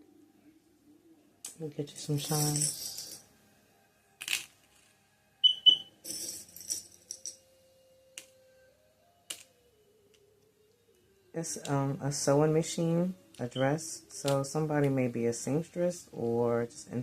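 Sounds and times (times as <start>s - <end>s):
metal charms clinking: 2.2s - 3.2s, 6.0s - 7.4s.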